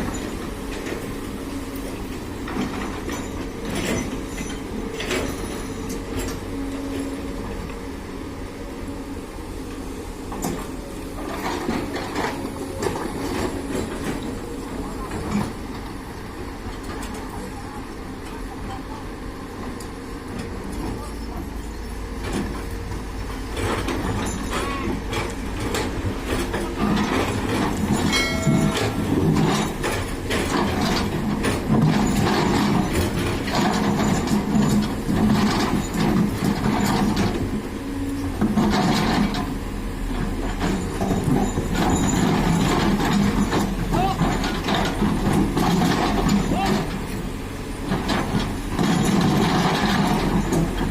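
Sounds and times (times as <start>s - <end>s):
excavator engine and hydraulics: 0.0s - 50.9s
knocks and rattles: 23.6s - 37.4s.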